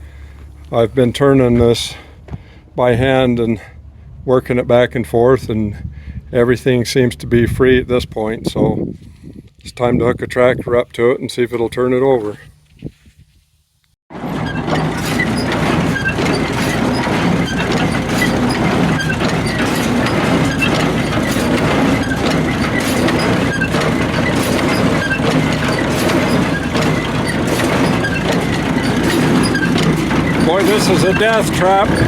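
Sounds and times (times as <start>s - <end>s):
hay baler clattering: 14.1s - 32.0s
tractor engine hum: 14.1s - 32.0s.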